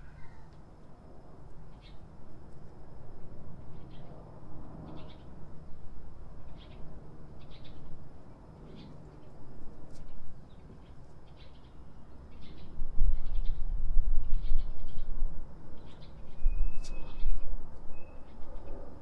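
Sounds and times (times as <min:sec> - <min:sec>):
small bird chirping: 0:01.7 - 0:02.0, 0:04.8 - 0:05.4, 0:06.4 - 0:07.9, 0:08.6 - 0:09.3, 0:09.9 - 0:13.7, 0:14.3 - 0:15.2, 0:15.8 - 0:18.8.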